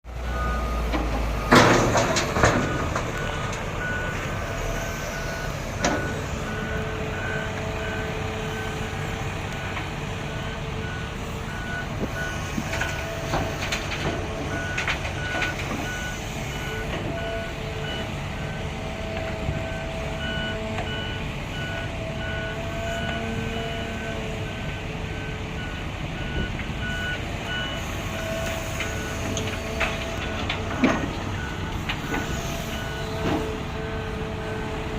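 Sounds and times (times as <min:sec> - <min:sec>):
diesel engine running: 0:00.0 - 0:34.9
reversing alarm beeping: 0:00.2 - 0:34.8
loud metal clank: 0:01.4 - 0:03.1.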